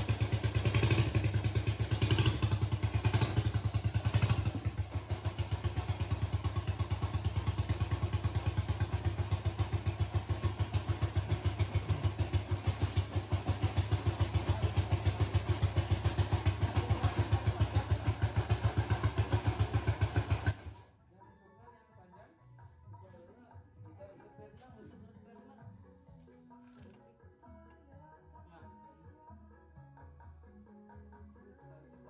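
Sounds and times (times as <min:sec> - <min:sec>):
diesel engine idling: 0:00.0 - 0:20.9.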